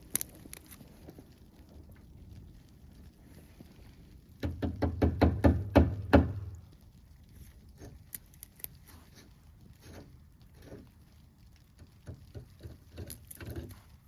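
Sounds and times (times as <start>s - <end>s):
rapid knocks: 4.4s - 6.6s.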